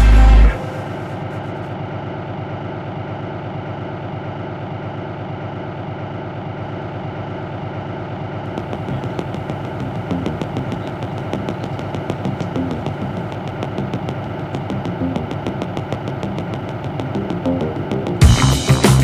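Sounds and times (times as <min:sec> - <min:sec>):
engine idling: 0:00.0 - 0:19.0
quick regular ticking: 0:08.6 - 0:19.0.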